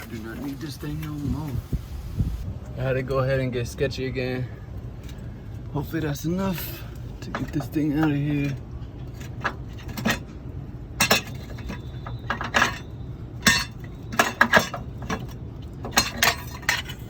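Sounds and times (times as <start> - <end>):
metallic clinks and knocks: 6.9 - 17.0.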